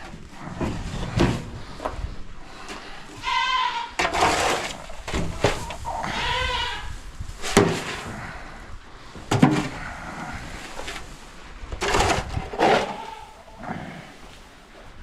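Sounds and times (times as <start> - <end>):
goat bleating: 3.2 - 4.0, 5.6 - 7.0
shovel scraping litter: 4.0 - 5.9.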